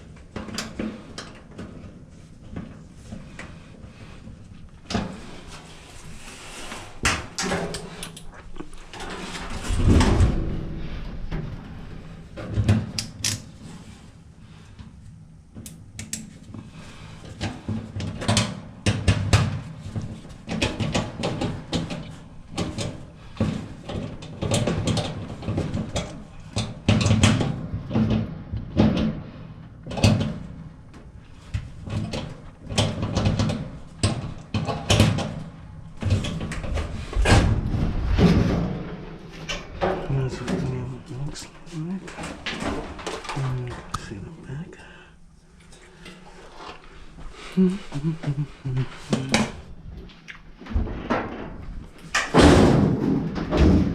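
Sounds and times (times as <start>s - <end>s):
metal parts clunking and rattling: 4.9s - 14.0s, 17.2s - 44.0s, 48.8s - 53.9s.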